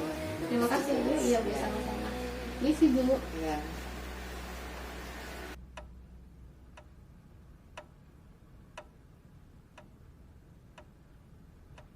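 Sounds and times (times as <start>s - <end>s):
clock ticking: 5.6s - 11.9s.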